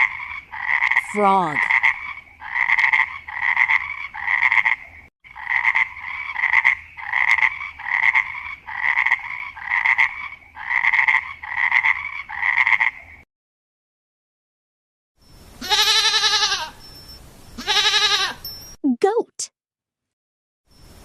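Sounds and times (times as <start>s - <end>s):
frog croaking: 0.0s - 13.2s.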